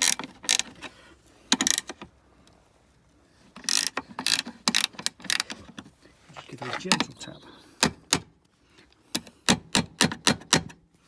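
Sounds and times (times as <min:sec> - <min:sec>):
ratchet spanner clicking: 0:03.6 - 0:05.5.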